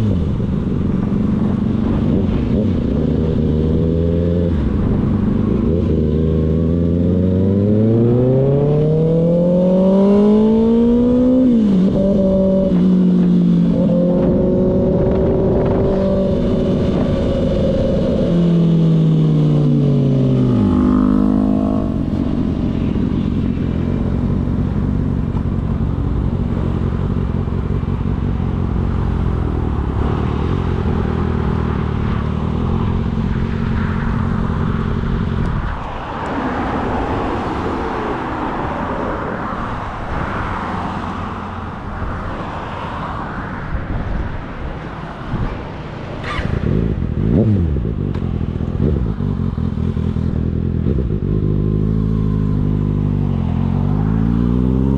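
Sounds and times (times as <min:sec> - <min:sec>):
motorcycle engine revving: 0:00.0 - 0:36.2, 0:46.1 - 0:54.9
rushing noise: 0:29.6 - 0:46.9.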